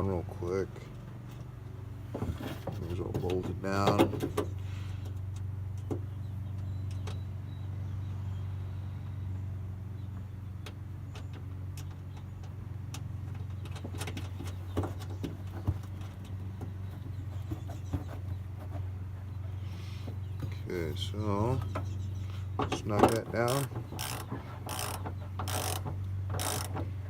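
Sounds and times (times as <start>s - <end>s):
hand tools clicking: 22.7s - 26.8s.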